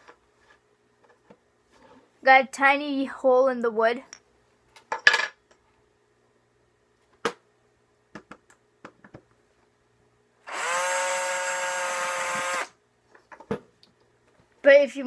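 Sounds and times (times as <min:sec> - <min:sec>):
electric drill motor whine: 0:10.4 - 0:12.8.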